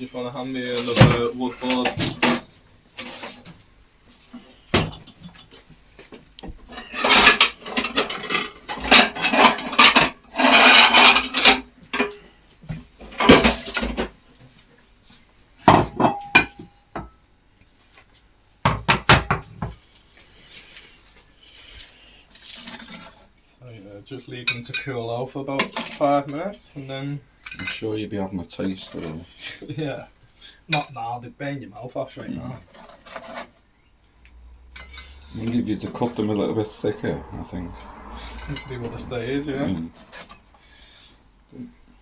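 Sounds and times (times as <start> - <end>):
dishes and utensils clattering: 6.5 - 12.2, 13.0 - 14.1, 15.6 - 17.1, 18.7 - 19.8, 34.6 - 36.5.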